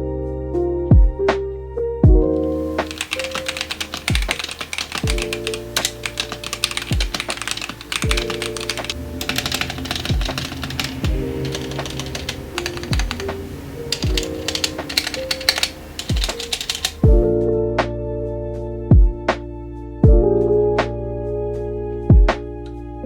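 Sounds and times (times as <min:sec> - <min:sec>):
background music with kick drum: 0:00.9 - 0:02.4, 0:06.9 - 0:07.3, 0:10.1 - 0:12.0, 0:17.0 - 0:23.0
fast typing on computer keyboard: 0:02.4 - 0:17.2.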